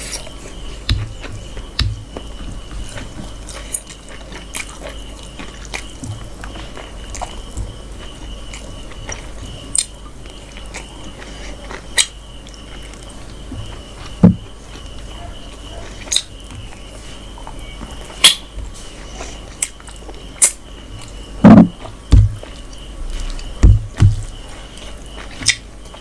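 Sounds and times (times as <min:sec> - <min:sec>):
wet chewing and lip smacks: 0:03.5 - 0:14.2, 0:21.8 - 0:26.0.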